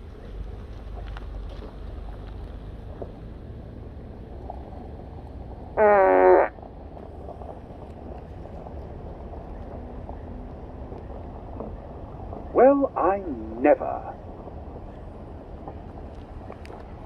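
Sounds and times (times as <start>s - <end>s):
low background rumble: 0.0s - 17.0s
buzzy quavering tone from speaker: 5.8s - 6.6s.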